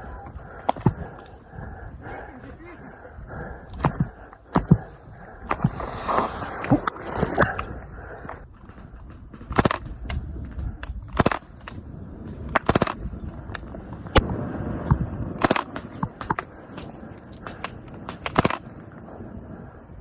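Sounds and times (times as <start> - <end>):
guns firing bursts and shots: 8.7 - 10.1, 11.0 - 11.8, 12.4 - 13.2, 15.3 - 18.8.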